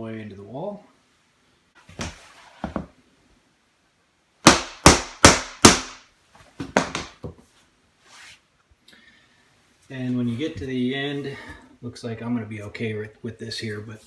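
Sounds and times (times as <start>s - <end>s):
mallet knocking flooring planks: 2.0s - 2.9s, 4.5s - 6.0s, 6.6s - 7.3s.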